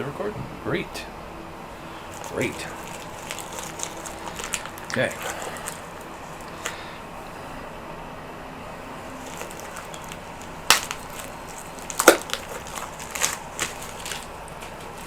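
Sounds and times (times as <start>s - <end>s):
cards and packaging crackling: 2.0s - 7.0s, 9.0s - 15.0s.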